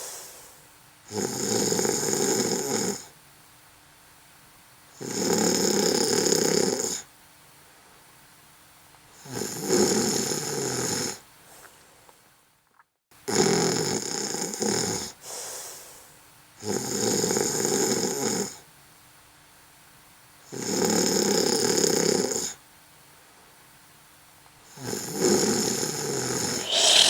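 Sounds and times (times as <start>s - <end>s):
person snoring: 26.4s - 27.0s.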